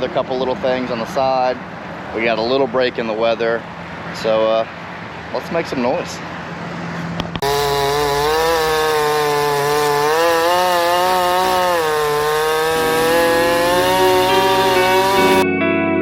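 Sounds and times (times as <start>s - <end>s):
chainsaw cutting wood: 7.4s - 15.4s.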